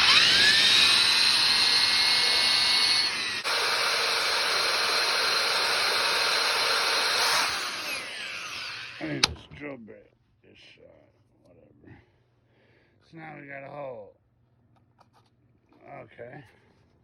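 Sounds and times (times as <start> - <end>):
electric drill whining: 0.0 - 9.4.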